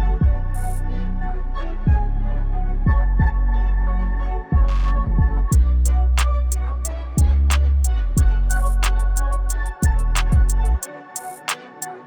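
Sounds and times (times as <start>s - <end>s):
song with deep bass line: 0.0s - 12.0s
punchy kick drum hits: 4.6s - 5.7s, 7.2s - 7.5s, 8.2s - 8.4s.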